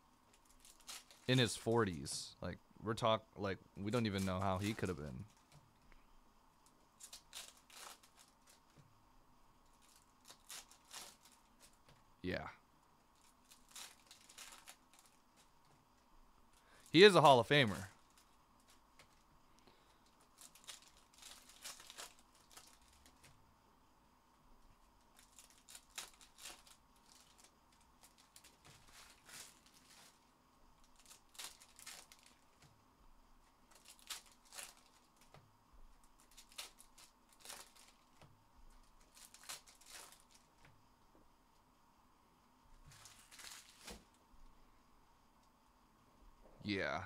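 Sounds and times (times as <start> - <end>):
wrappers crinkling and rustling: 0.3 - 2.3, 3.9 - 5.8, 6.6 - 9.0, 9.6 - 12.0, 13.0 - 23.4, 24.7 - 32.8, 33.5 - 40.7, 42.8 - 44.2.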